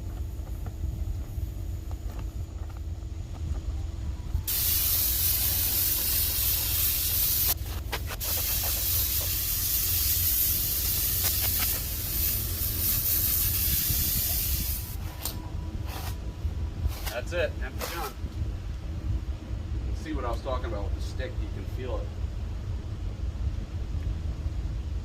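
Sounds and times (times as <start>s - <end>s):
paint spray gun hissing: 4.5s - 15.0s.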